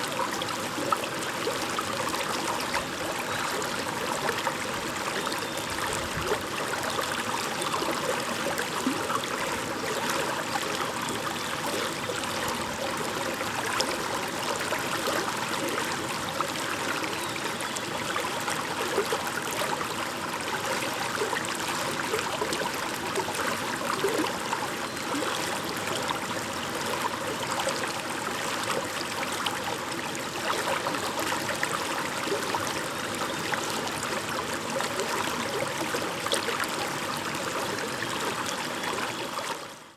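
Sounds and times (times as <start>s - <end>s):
stream babbling over stones: 0.0s - 39.9s.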